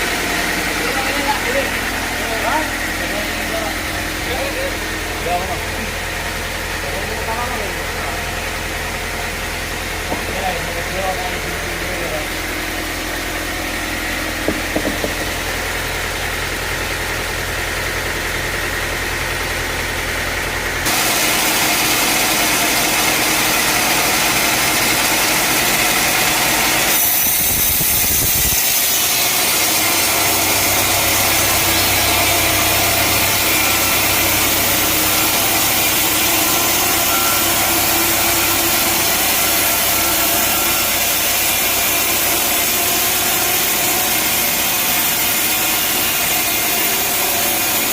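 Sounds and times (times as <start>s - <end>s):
sawmill engine running: 0.0s - 47.9s.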